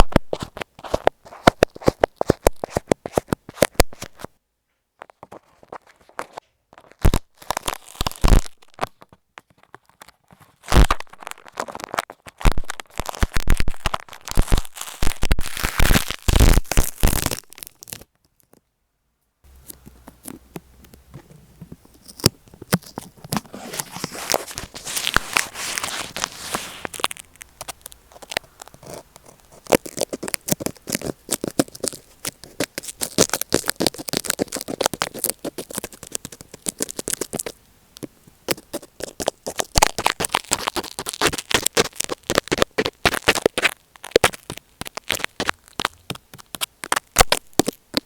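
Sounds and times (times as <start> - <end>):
scratching on microphone: 0.0 - 4.3, 5.2 - 18.0, 19.5 - 37.6, 38.6 - 48.0
rubbing on microphone: 19.5 - 37.4.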